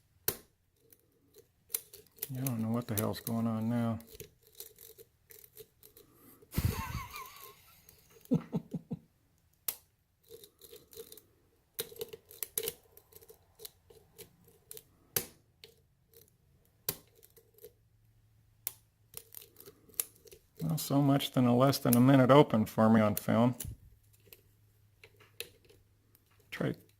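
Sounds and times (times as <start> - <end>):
lock pick clicking on pins: 0.2 - 3.4.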